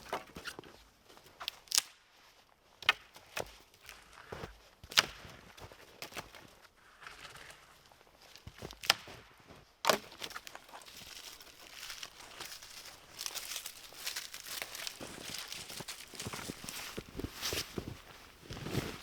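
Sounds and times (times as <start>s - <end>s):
crinkling handling noises: 9.5s - 19.0s.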